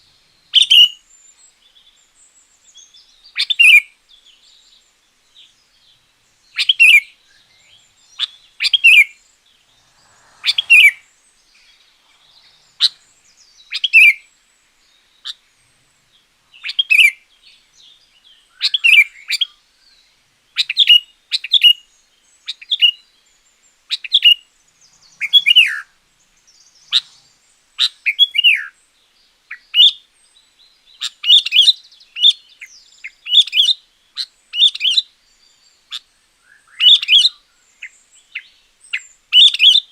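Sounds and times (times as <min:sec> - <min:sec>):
bird chirping song: 0:00.0 - 0:39.9.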